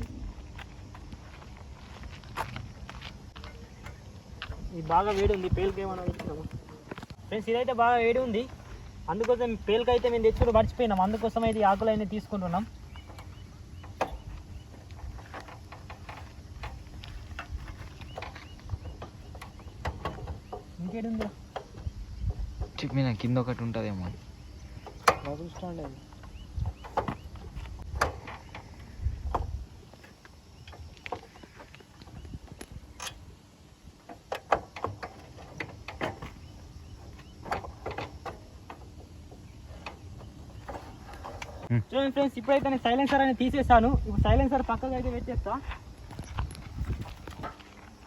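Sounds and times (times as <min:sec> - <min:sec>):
metallic clanks and knocks: 0:09.8 - 0:33.3, 0:34.0 - 0:41.7.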